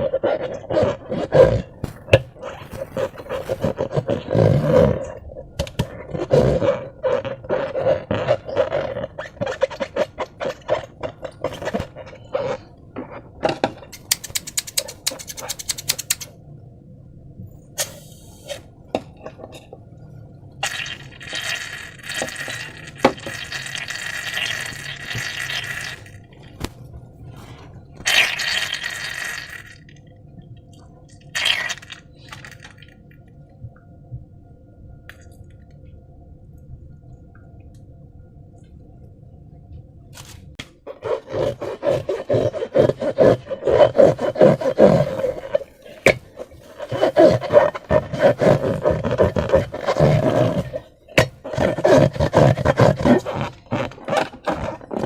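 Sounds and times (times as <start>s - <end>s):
slime squelching: 0.0s - 13.3s, 20.6s - 30.0s, 31.2s - 33.0s, 40.8s - 55.0s.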